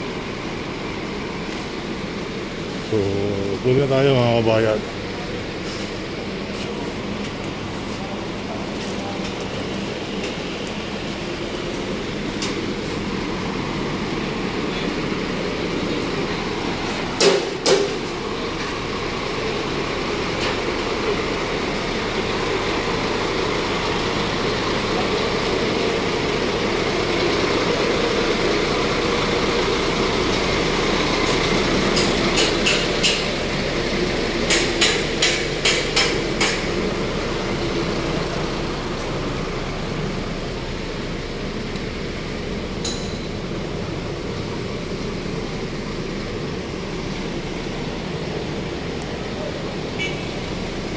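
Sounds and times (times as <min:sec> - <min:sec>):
vehicle road noise: 0:00.0 - 0:50.9
sharp clacks: 0:31.9 - 0:33.4, 0:34.4 - 0:36.8.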